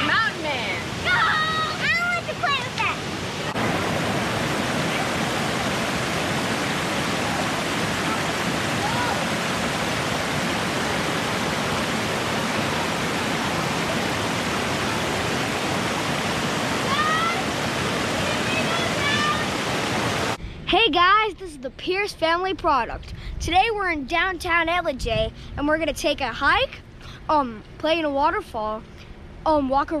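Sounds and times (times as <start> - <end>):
waterfall roaring: 0.0 - 20.4.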